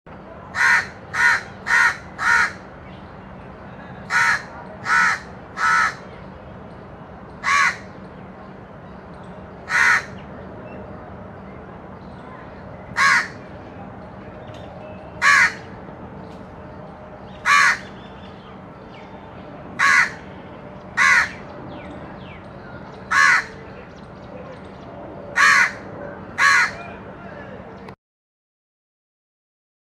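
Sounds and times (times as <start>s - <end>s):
crow cawing: 0.5s - 2.6s, 4.1s - 6.0s, 7.4s - 7.9s, 9.7s - 10.2s, 13.0s - 13.4s, 15.2s - 15.7s, 17.4s - 17.9s, 19.8s - 20.3s, 21.0s - 21.4s, 23.1s - 23.6s, 25.4s - 26.9s.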